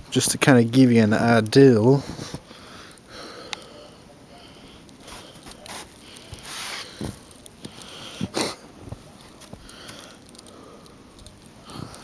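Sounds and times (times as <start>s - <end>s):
faint clicks and rustles: 1.3s - 12.0s
person breathing and sniffing: 2.1s - 8.6s.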